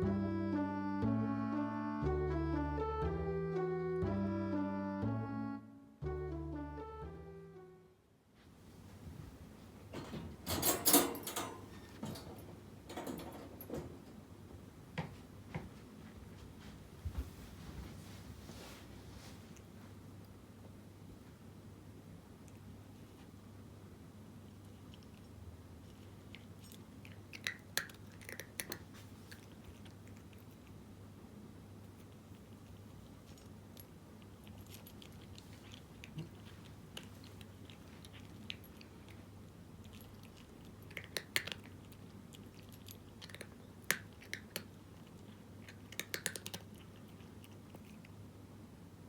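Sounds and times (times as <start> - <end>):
cat crunching dry food: 24.4 - 30.9, 31.8 - 48.3.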